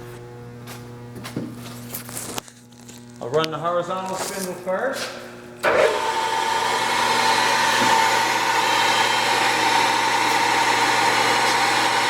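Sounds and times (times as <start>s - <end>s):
milling machine motor hum: 5.4s - 12.0s
spindle gearing whine: 5.4s - 12.0s.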